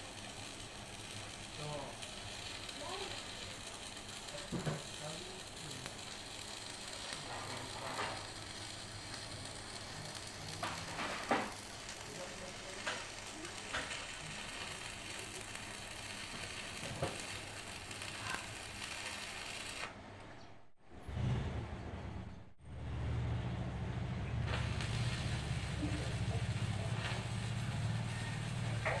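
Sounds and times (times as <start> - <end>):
sharp welding pops: 0.0 - 20.4, 24.4 - 29.0
welding arc sizzling and crackling: 0.0 - 20.4, 24.0 - 29.0.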